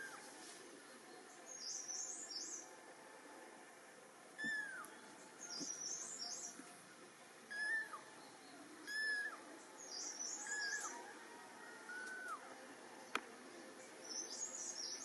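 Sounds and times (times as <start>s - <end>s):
kittens meowing: 4.4s - 4.9s
faint high chirping: 4.4s - 6.6s, 7.5s - 12.5s.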